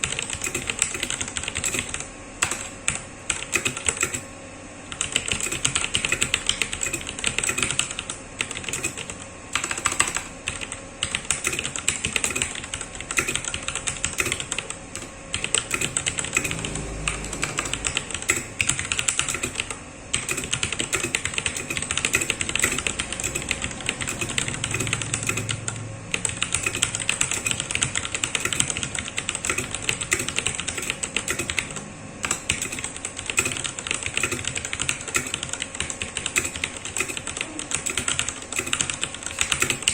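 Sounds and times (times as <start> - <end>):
mechanical keyboard typing: 0.0 - 4.3, 4.9 - 39.9.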